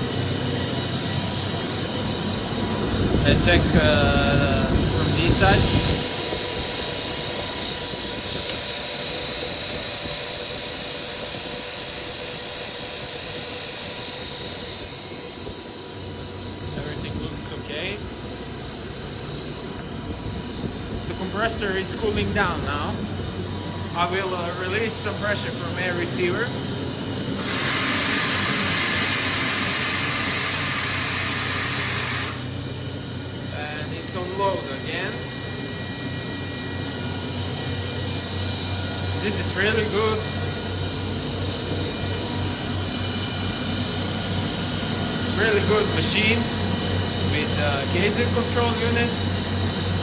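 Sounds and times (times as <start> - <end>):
air compressor whine: 0.0 - 50.0
mechanical hum: 0.0 - 50.0
compressed air hissing: 27.4 - 32.6.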